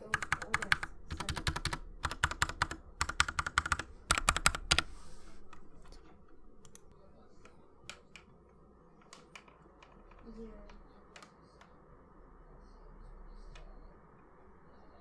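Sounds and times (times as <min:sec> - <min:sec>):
fast typing on mechanical keyboard: 0:00.0 - 0:08.4.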